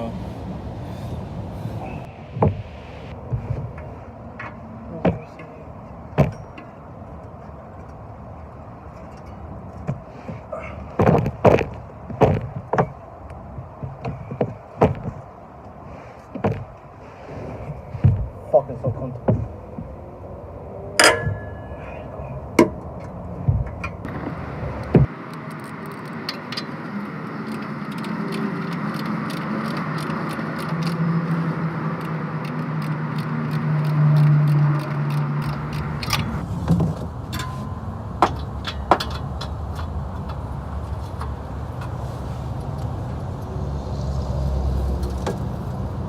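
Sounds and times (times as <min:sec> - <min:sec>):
low hum: 0:16.7 - 0:28.3
wrench and ratchet clicking on metal: 0:25.3 - 0:36.4.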